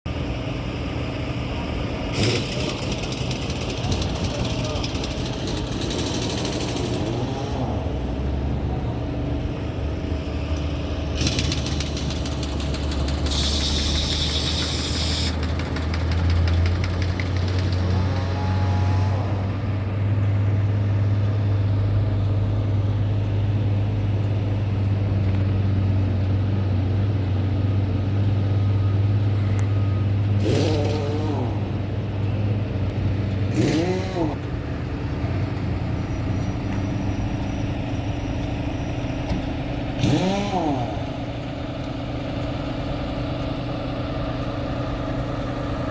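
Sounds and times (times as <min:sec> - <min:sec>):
engine running: 0:00.1 - 0:45.9.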